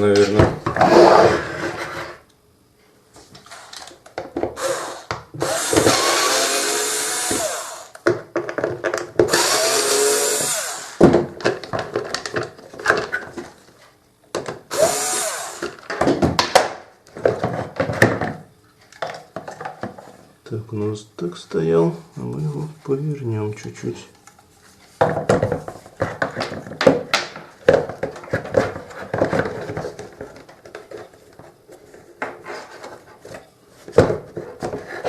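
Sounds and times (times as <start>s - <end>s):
creaky plastic rubbing and scraping: 27.7s - 35.0s.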